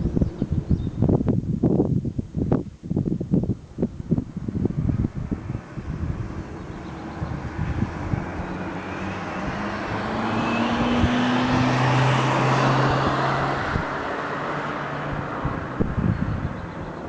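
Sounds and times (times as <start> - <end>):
car passing by: 4.7 - 15.9.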